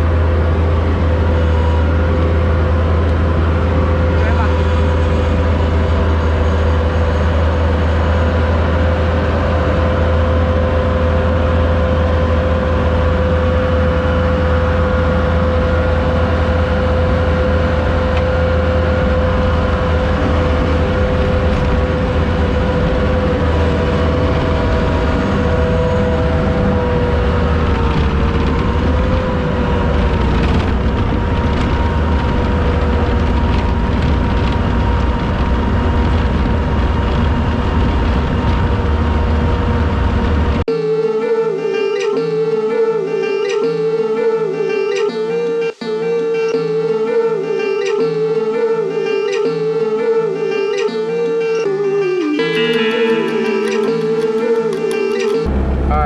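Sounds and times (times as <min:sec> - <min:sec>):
road noise inside cab: 0:00.0 - 0:40.7, 0:54.6 - 0:56.0
truck engine rumbling: 0:00.0 - 0:40.7, 0:52.4 - 0:56.0.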